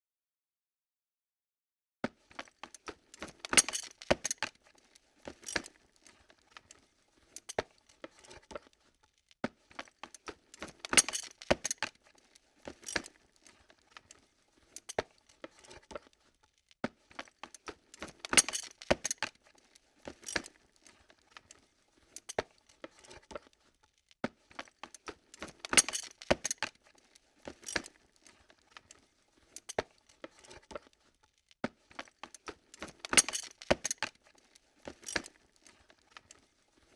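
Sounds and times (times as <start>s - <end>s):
lens clicking and rattling: 2.3s - 36.9s.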